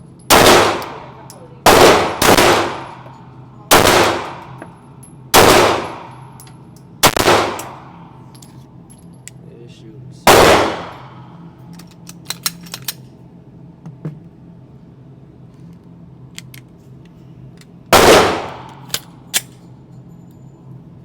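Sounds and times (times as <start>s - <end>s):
pistol shot: 0.3s - 1.0s, 1.7s - 3.0s, 3.7s - 4.6s, 5.4s - 6.1s, 7.0s - 7.9s, 10.3s - 11.2s, 18.0s - 18.7s
light metallic clinks: 8.3s - 9.4s, 19.3s - 20.8s.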